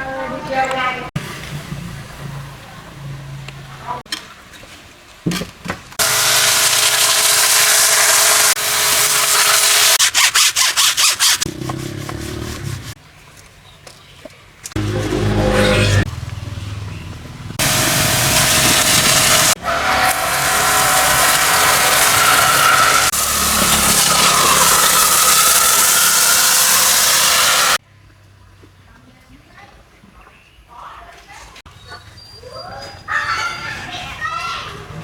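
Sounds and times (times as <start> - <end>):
pressure washer spraying: 6.0 - 12.9, 17.6 - 27.8.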